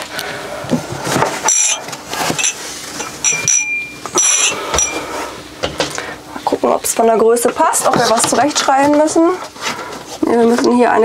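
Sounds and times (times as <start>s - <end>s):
drinking glasses clinking: 1.5s - 1.8s, 2.4s - 5.1s.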